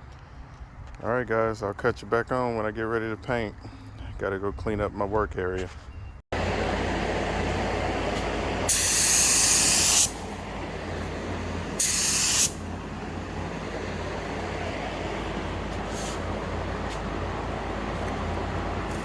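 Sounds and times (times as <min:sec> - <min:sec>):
steady background hum: 0:06.4 - 0:19.0
air tool hissing: 0:08.7 - 0:10.3, 0:11.8 - 0:12.7.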